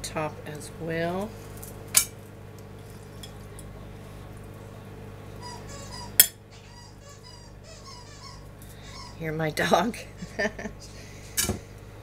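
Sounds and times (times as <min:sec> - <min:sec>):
squeaky dog toy squeaking: 0:05.4 - 0:09.2.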